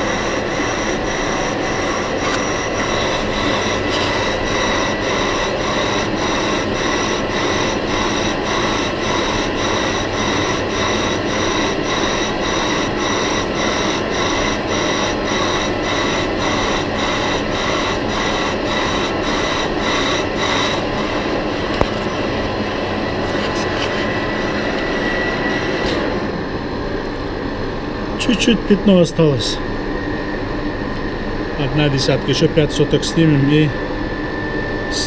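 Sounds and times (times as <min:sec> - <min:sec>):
even machine pulse: 0:00.0 - 0:26.5
high cutting whine: 0:00.0 - 0:35.0
lathe machine noise: 0:00.0 - 0:35.0.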